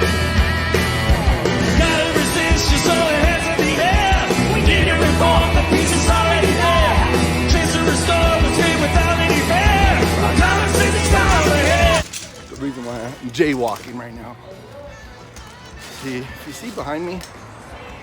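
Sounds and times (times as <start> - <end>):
rock music with drums and guitar: 0.0 - 12.1.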